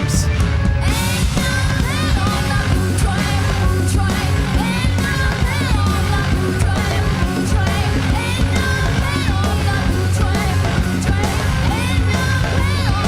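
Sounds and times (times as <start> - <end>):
person shouting vocals: 0.0 - 0.3
electric bass: 0.0 - 13.0
live rock band playing: 0.0 - 13.0.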